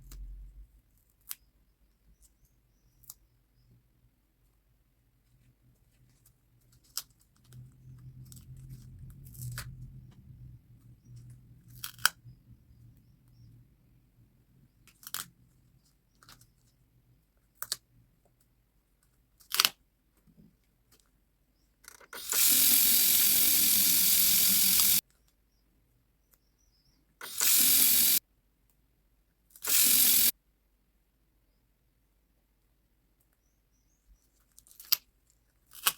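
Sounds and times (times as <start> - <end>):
soft paper rustling: 5.2 - 9.6.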